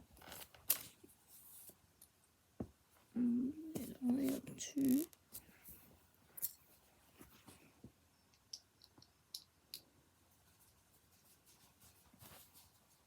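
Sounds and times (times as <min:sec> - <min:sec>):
soft rustle: 0:00.0 - 0:02.0, 0:02.9 - 0:07.9, 0:10.3 - 0:13.0.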